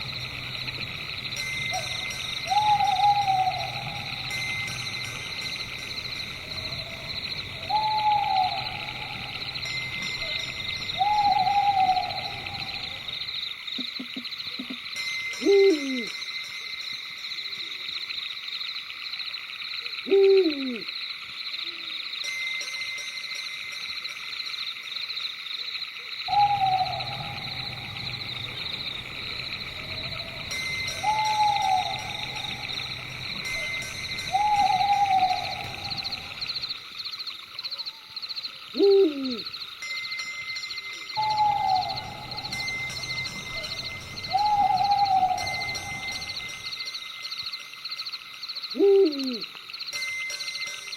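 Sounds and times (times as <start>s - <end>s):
high-pitched night chorus: 0.0s - 23.1s, 24.0s - 50.9s
owl hooting: 1.7s - 4.7s, 6.2s - 13.3s, 15.4s - 16.1s, 20.0s - 20.9s, 26.3s - 36.7s, 38.7s - 39.5s, 41.2s - 46.6s, 48.7s - 49.5s.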